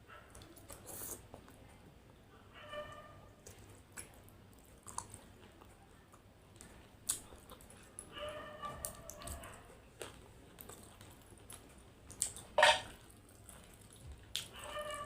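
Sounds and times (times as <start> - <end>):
clicks of someone eating: 3.4 - 8.1, 8.8 - 14.6.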